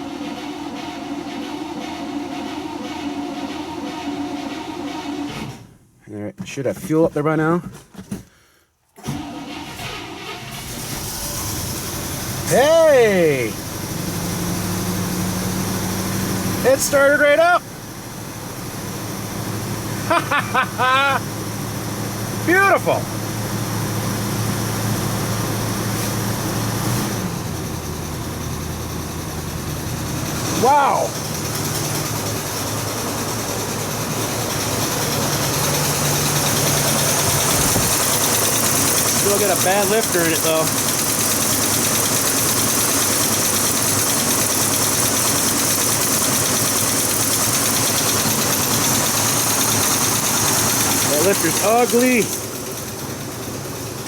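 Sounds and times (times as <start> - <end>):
car engine idling: 10.1 - 54.0
engine lifter ticking: 27.7 - 54.0.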